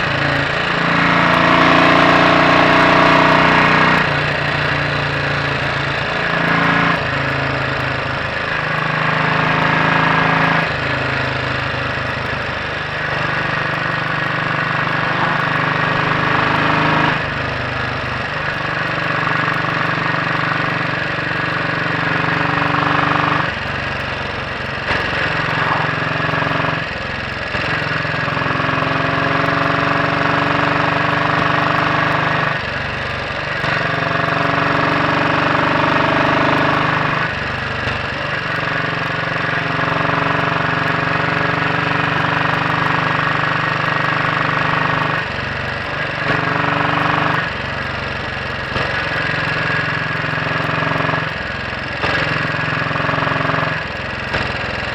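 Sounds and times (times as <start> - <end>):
motorcycle engine running: 0.0 - 54.9.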